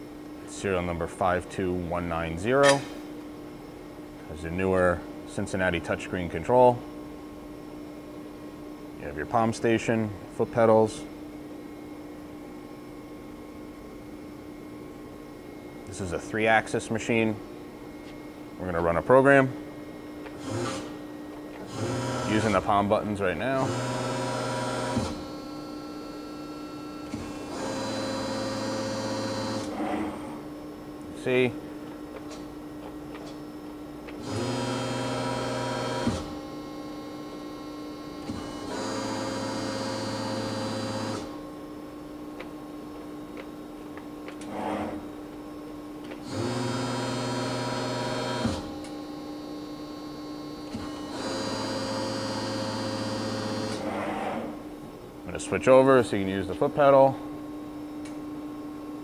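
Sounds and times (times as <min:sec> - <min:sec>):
sharp click: 0:02.6 - 0:03.0
hydraulic pump and motor hum: 0:15.4 - 0:59.0
high-pitched machine whine: 0:23.6 - 0:30.4, 0:34.2 - 0:41.5, 0:46.2 - 0:54.6.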